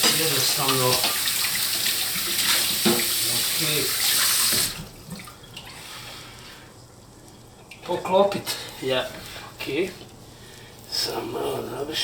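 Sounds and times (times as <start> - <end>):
water running from tap: 0.0 - 5.8.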